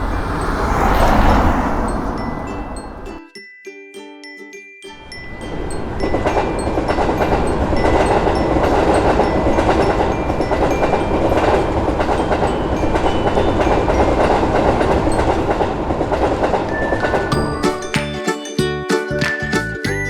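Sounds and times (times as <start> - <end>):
train wheels rumbling on rails: 0.0 - 3.2, 6.1 - 20.0.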